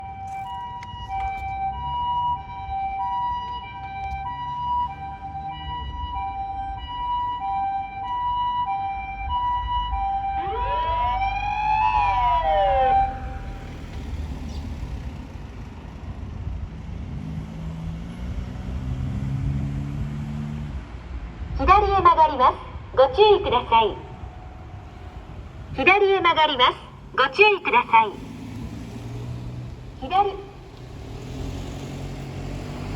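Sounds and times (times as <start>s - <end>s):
wailing siren: 0.0s - 14.1s, 23.0s - 28.4s
two-tone ambulance siren: 0.0s - 15.0s, 22.0s - 29.4s, 30.0s - 30.8s
vehicle engine droning: 10.6s - 21.2s, 23.9s - 32.9s.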